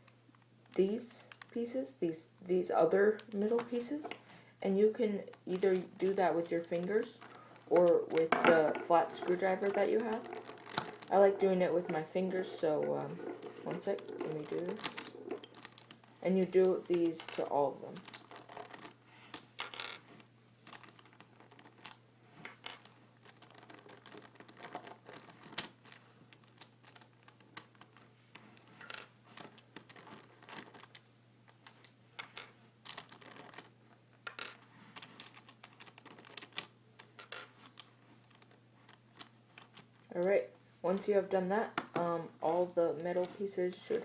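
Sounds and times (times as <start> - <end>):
plastic puzzle pieces clicking: 6.8 - 16.3, 16.9 - 20.0, 20.6 - 28.1, 28.8 - 39.9.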